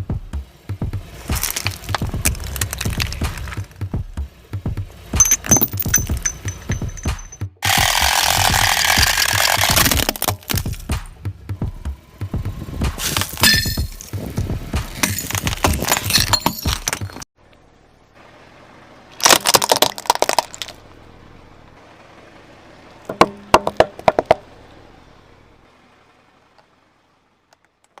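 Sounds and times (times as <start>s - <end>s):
tyre crushing brittle objects: 1.2s - 3.7s, 7.6s - 11.1s, 13.0s - 17.3s, 19.2s - 20.8s.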